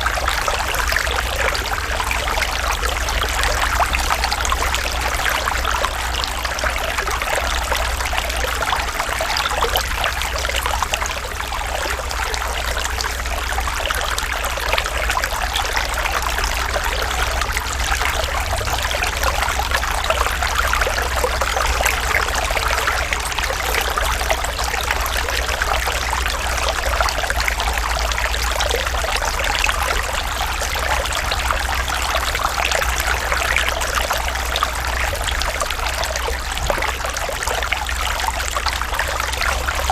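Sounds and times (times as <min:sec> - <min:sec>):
water trickling: 0:00.0 - 0:39.9
low rumble: 0:09.8 - 0:33.4.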